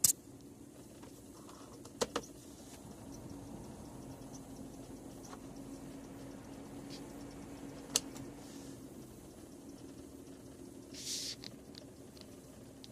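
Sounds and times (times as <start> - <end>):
low hum: 2.3 - 12.9
high-pitched squeaking chirps: 2.9 - 8.4
short hiss: 10.9 - 11.5.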